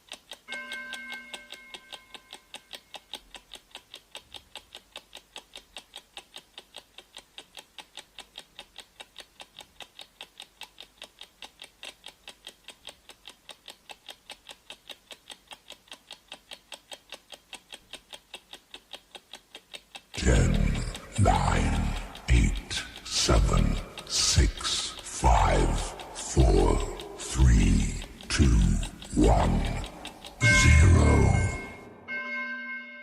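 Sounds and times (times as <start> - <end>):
clock ticking quickly: 0.0 - 32.1.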